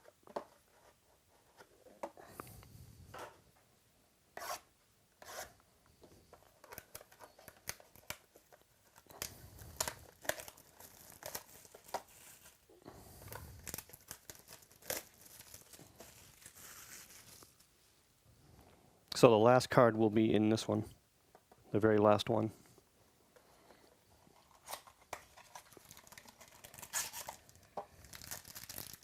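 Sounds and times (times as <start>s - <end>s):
wrapper tearing and crinkling: 6.6s - 12.6s, 13.5s - 17.7s, 24.6s - 29.0s.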